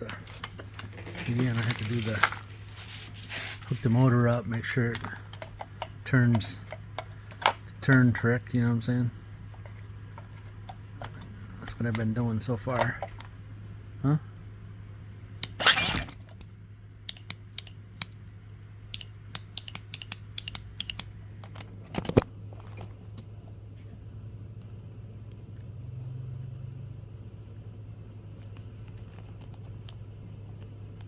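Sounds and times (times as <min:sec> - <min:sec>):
metal parts clicking and clinking: 0:00.0 - 0:02.6, 0:04.3 - 0:07.6, 0:15.4 - 0:16.5, 0:17.1 - 0:18.1, 0:18.9 - 0:23.4
steady low hum: 0:00.0 - 0:31.0.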